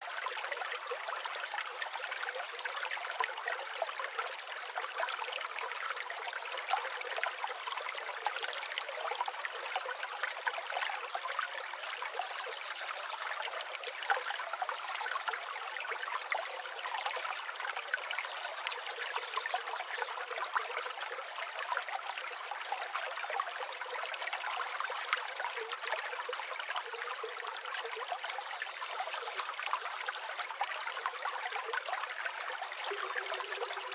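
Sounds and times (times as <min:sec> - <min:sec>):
forest ambience: 0:32.6 - 0:33.9.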